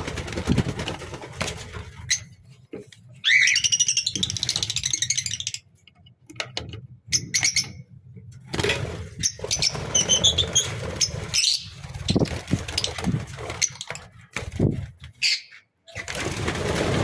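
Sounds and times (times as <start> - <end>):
wings flapping: 0.0 - 2.4, 8.5 - 15.2, 15.9 - 17.0
lovebirds chirping: 3.2 - 6.0, 9.2 - 14.1.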